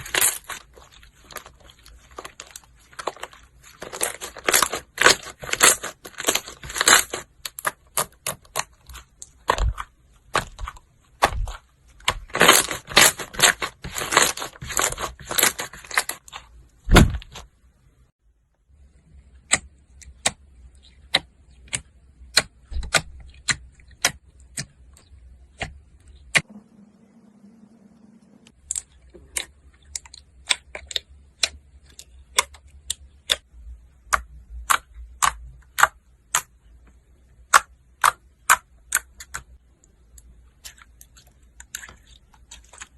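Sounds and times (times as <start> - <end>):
steady hum: 26.4 - 28.6.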